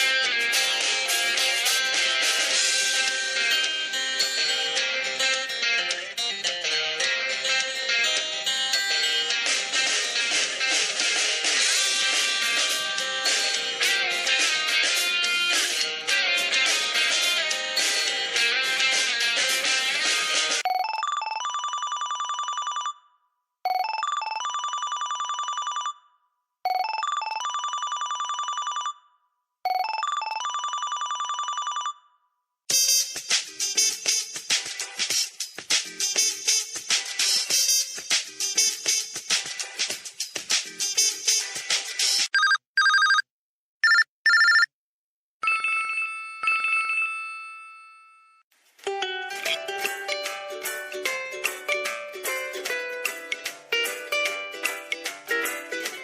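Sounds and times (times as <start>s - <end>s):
music ringtone: 20.6s - 23.1s, 23.7s - 26.0s, 42.3s - 43.2s, 43.8s - 44.7s
phone ringtone beeps and trill: 20.6s - 26.1s, 26.7s - 32.2s, 42.4s - 44.7s.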